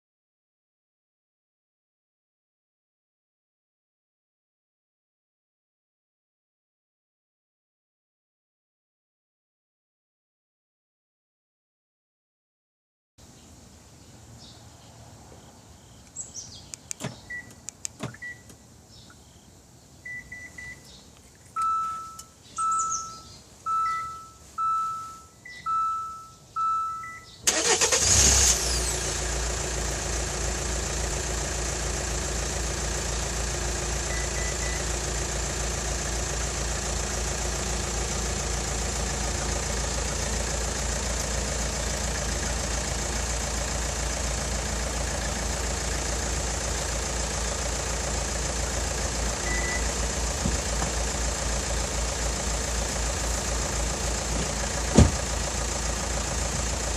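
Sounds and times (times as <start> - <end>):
loud single-tone beeps: 20.1 - 20.8, 21.6 - 27.4, 49.4 - 49.9
electronic chirps: 21.6 - 27.4, 49.4 - 49.9
car engine starting and idling: 27.4 - 56.9.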